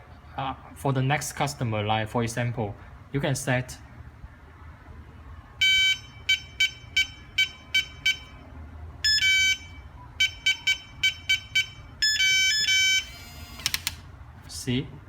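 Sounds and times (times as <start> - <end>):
keypad lock beeping: 5.6 - 8.4, 9.0 - 14.0.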